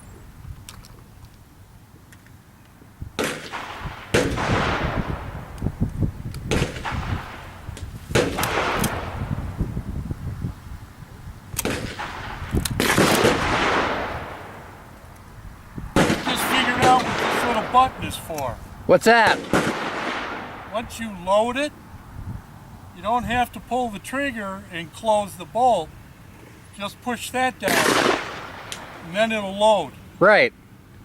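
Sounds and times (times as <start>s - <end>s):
shotgun shots with echo: 3.2s - 5.4s, 6.5s - 9.2s, 11.6s - 14.8s, 16.0s - 18.6s, 19.3s - 20.8s, 27.7s - 29.0s.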